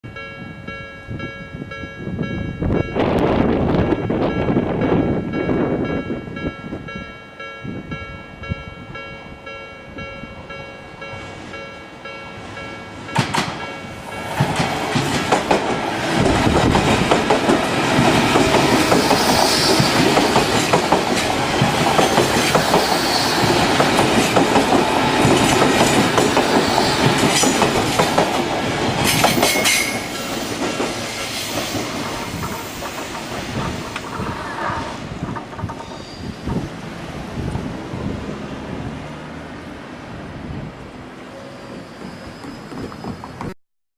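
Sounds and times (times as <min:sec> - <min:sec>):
level-crossing warning bell: 0:00.0 - 0:15.1
train wheels over rail joints: 0:10.4 - 0:43.6.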